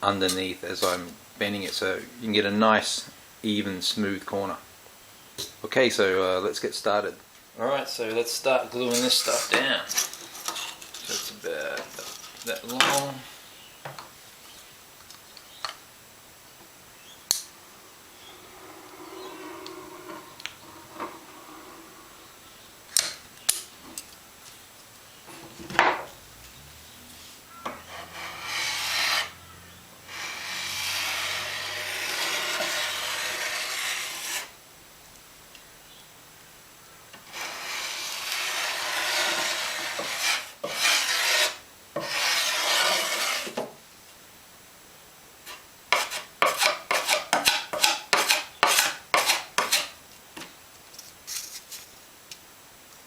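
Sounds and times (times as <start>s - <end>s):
scraper rubbing and scraping: 27.2s - 29.4s, 30.1s - 34.5s, 37.3s - 43.6s.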